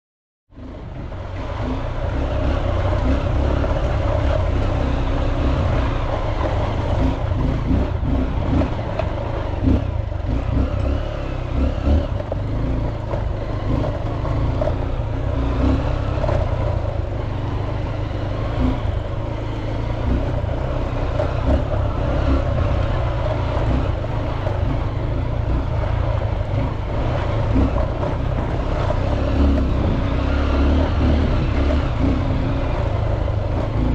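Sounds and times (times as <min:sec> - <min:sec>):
motorcycle engine running: 0:00.5 - 0:33.9.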